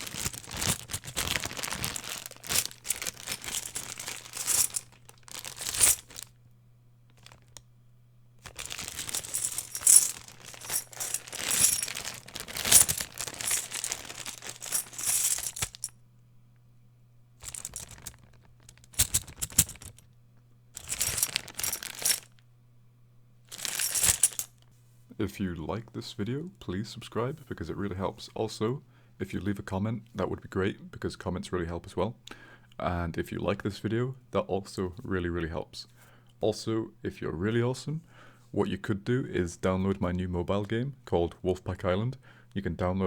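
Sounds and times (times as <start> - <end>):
coins jingling in a bag: 0.0 - 6.3, 8.5 - 15.9, 17.4 - 20.0, 20.8 - 22.3, 23.5 - 24.5.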